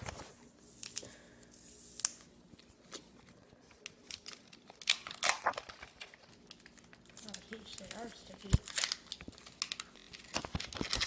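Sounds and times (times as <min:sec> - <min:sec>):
wrapper crinkling and tearing: 0:01.8 - 0:11.0.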